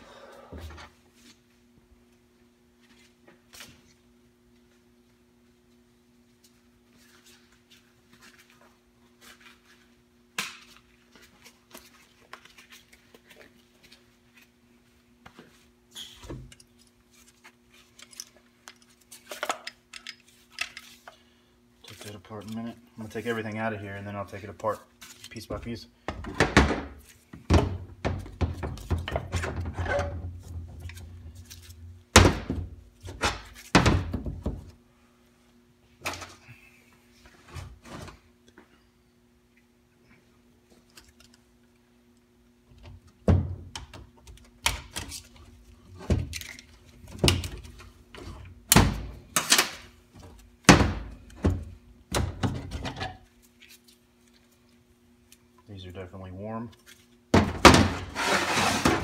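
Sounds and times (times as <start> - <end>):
metal scraping: 58.0 - 59.0.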